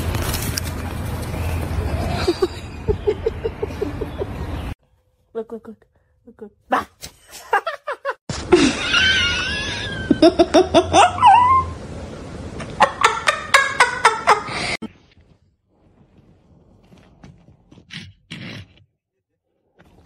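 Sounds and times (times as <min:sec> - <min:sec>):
person laughing in bursts: 0:07.4 - 0:11.4, 0:12.7 - 0:14.8.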